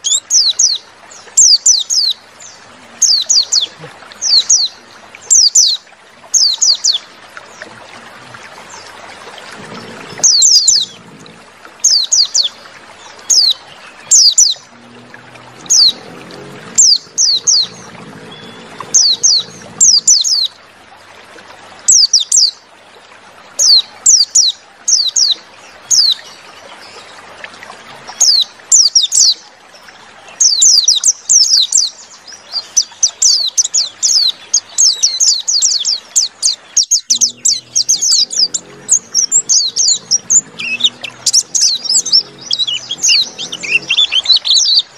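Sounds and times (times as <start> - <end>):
bird chirping: 33.3 - 44.9.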